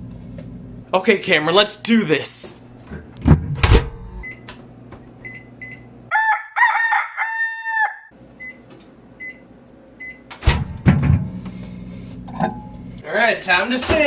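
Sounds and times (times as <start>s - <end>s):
loud pitched call: 6.1s - 8.1s.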